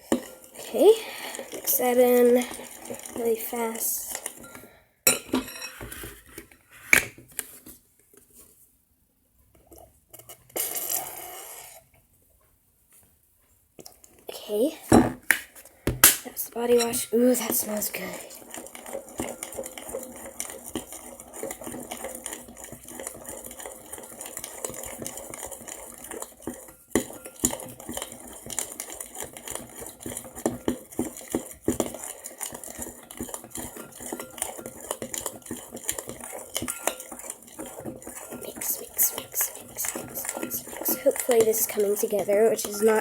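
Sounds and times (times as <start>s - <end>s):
spoon stirring thick batter in bowl: 0.0s - 8.6s, 9.4s - 12.0s, 13.8s - 43.0s.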